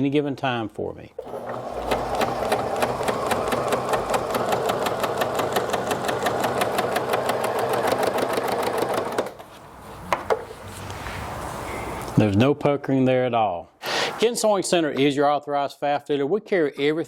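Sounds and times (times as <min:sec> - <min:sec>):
sewing machine stitching: 0:01.2 - 0:09.4.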